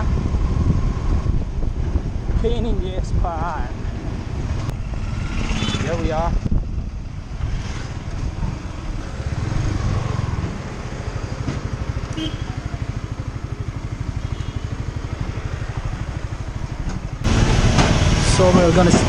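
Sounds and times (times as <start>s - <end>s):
motorcycle engine idling: 11.3s - 17.4s.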